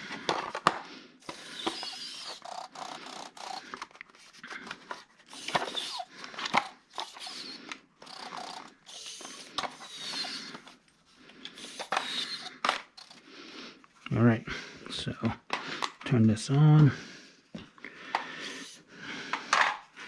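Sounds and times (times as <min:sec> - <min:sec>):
plastic clicks and rattles: 0:00.1 - 0:10.8, 0:11.4 - 0:13.2.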